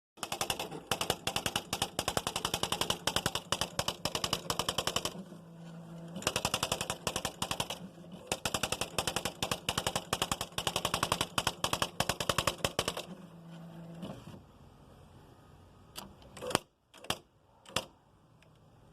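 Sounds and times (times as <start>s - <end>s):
typewriter strikes: 0.2s - 5.2s, 6.2s - 13.1s.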